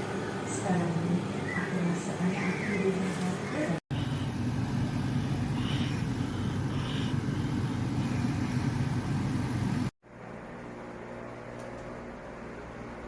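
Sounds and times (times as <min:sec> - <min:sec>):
quiet steady hum: 0:00.0 - 0:13.0
motor rumbling: 0:03.9 - 0:13.0.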